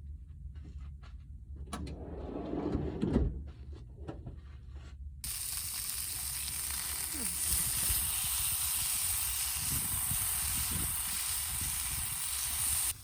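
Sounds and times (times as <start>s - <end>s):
cooking sizzling hiss: 5.2s - 13.0s.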